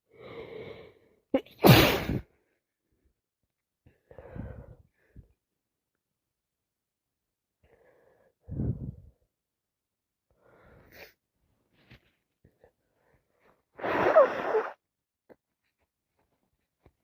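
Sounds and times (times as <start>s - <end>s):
person sneezing: 1.4s - 2.3s, 13.8s - 14.8s
soft breath in: 4.0s - 5.4s, 7.6s - 9.2s.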